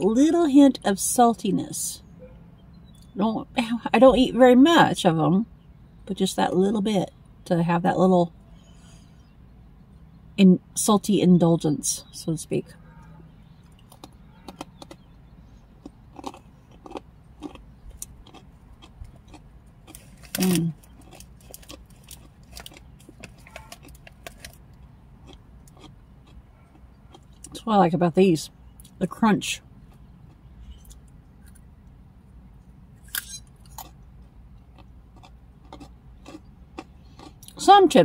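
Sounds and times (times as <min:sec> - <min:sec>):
person chewing crunchy chips: 0:15.8 - 0:27.6, 0:33.0 - 0:37.6.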